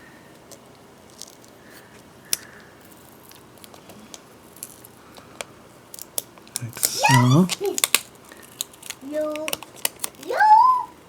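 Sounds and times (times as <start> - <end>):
tape peeling clicks: 5.4 - 10.2.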